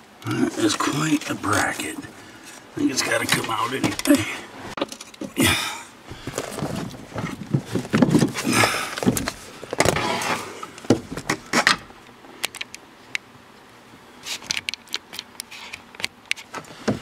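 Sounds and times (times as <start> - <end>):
tools rustling and knocking: 6.2 - 11.8.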